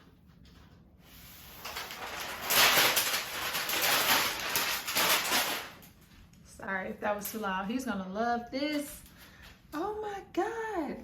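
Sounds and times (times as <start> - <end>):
plastic film crinkling: 0.3 - 6.4.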